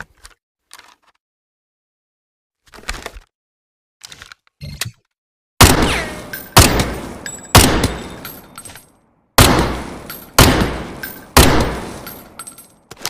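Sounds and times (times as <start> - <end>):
submachine gun firing: 5.6 - 8.2, 9.4 - 12.2.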